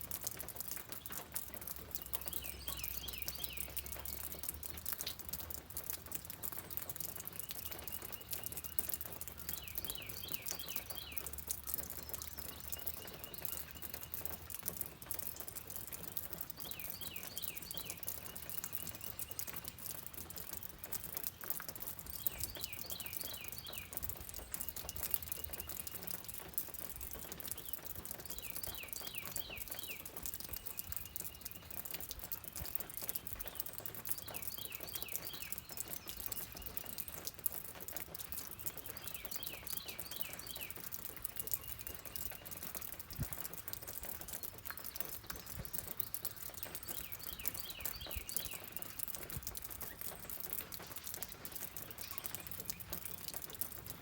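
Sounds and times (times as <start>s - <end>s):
rain patter: 0.0s - 54.0s
bird singing: 1.9s - 4.5s, 7.3s - 15.8s, 16.4s - 20.2s, 21.4s - 26.4s, 27.4s - 32.0s, 33.4s - 37.3s, 38.5s - 42.8s, 43.9s - 53.6s.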